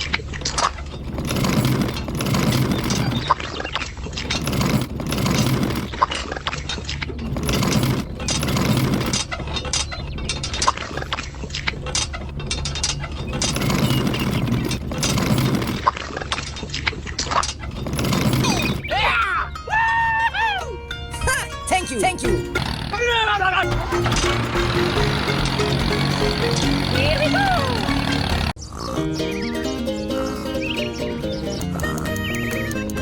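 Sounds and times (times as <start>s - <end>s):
small motor humming: 22.2s - 28.6s
sharp clicks: 31.5s - 33.0s.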